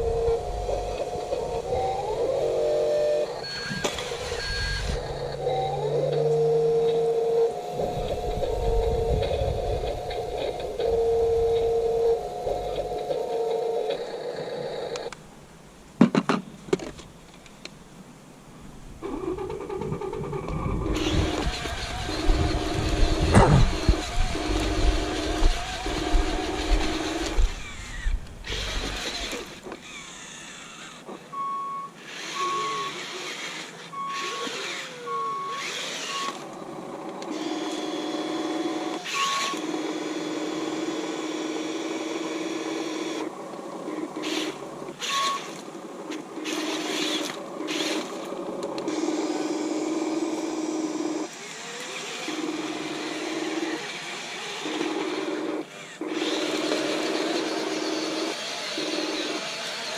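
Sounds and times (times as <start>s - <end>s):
motor hum: 0.0s - 15.2s, 19.0s - 59.9s
high beeps: 2.9s - 7.1s, 31.4s - 32.9s
heavy low rumbling and knocks: 22.6s - 25.5s.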